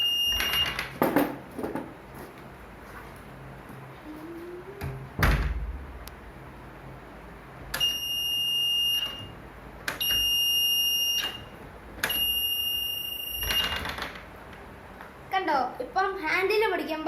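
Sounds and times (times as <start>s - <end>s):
high steady buzzer beep: 0.0s - 0.8s, 7.8s - 9.4s, 10.0s - 13.8s
loud thump: 5.2s - 6.0s.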